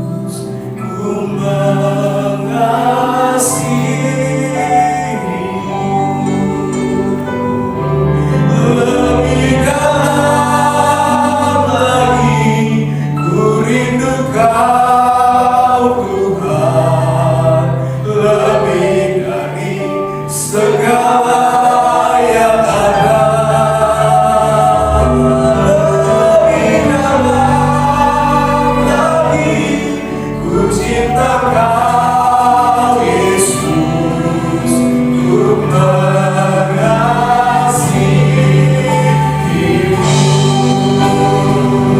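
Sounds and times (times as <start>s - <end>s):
choir singing: 0.0s - 41.9s.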